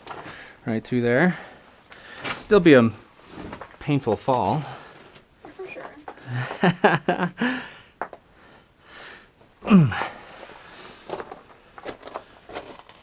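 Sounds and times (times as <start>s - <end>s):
person breathing: 1.3s - 2.4s, 7.4s - 12.7s
person grunting: 9.6s - 10.2s
clicks and scrapes on rock: 11.0s - 13.0s.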